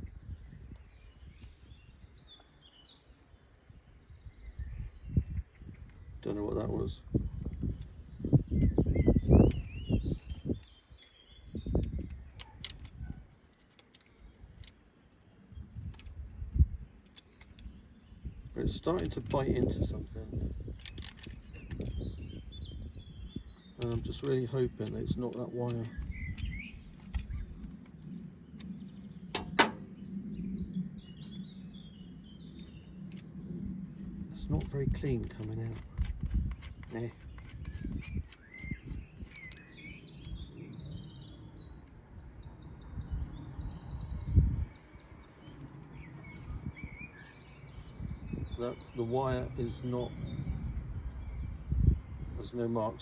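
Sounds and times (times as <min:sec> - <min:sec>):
small birds chirping: 0:00.0 - 0:53.0
sharp click: 0:29.4 - 0:30.0.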